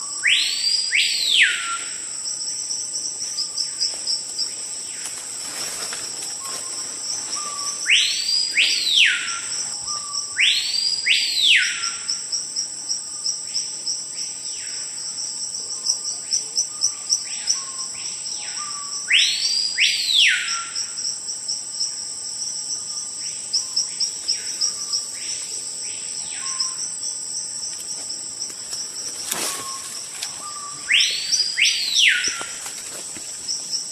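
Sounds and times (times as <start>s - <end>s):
high insect buzz: 0.0s - 33.9s
rapid insect chirping: 0.0s - 33.9s
bird whistled calls: 29.5s - 32.5s.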